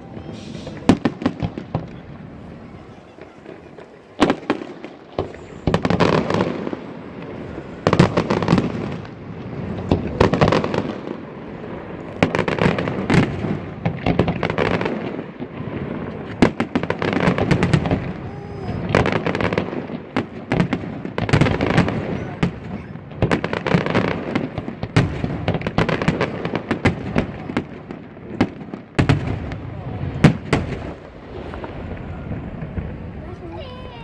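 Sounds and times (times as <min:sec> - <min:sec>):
fireworks bursting with bangs: 0:00.0 - 0:34.0.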